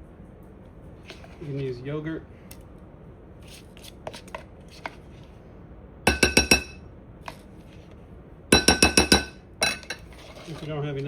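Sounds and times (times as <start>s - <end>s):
utensil tapping glass bowl: 6.1s - 6.8s, 8.5s - 10.0s.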